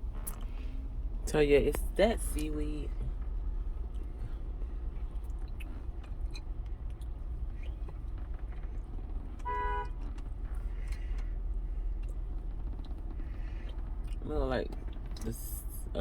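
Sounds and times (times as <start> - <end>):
vehicle rumble: 0.0 - 16.0
chewing clicks: 5.2 - 8.0
car horn toot: 9.4 - 10.1.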